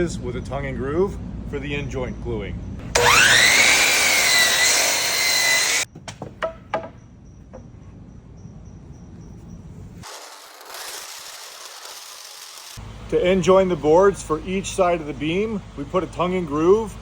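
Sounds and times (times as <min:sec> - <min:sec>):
power saw whining: 0:02.8 - 0:05.9, 0:10.0 - 0:13.9
sharp knocks: 0:05.9 - 0:07.6.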